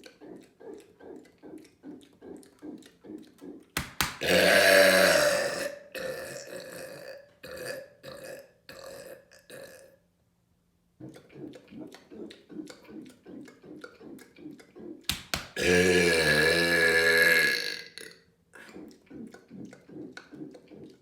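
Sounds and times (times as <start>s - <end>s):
quick rhythmic breaths: 0.0s - 4.2s, 18.6s - 21.0s
man burping loudly: 4.2s - 9.9s, 15.6s - 18.2s.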